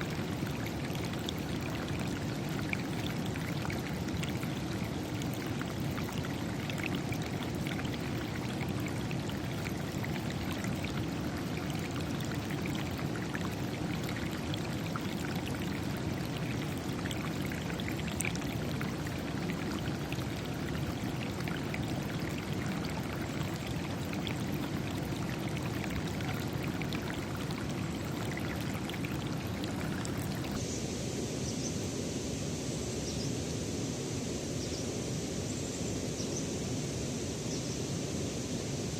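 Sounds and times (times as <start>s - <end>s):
stream water rushing: 0.0s - 30.6s.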